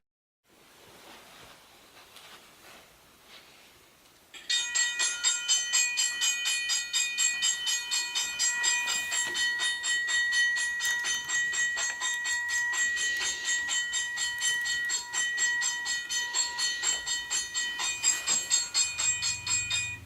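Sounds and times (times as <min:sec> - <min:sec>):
rhythmic clicking of train on track: 0:04.4 - 0:20.0.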